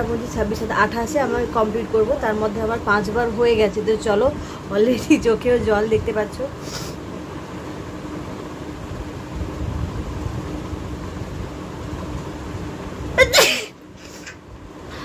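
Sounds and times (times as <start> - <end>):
woman sneezing: 13.2 - 14.2.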